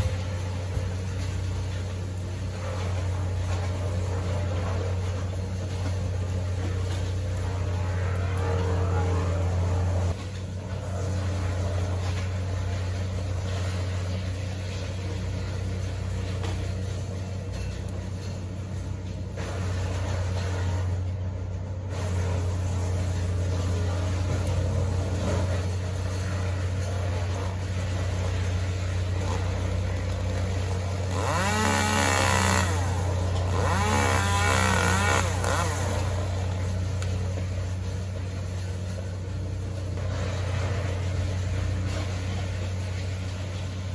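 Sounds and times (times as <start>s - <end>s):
low engine drone: 0.0s - 43.9s
engine revving: 6.6s - 10.2s, 21.9s - 37.6s.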